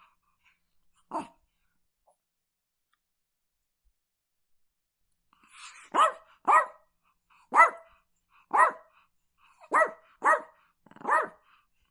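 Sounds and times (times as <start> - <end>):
dog barking: 5.8 - 6.9, 7.5 - 9.0, 9.6 - 11.5.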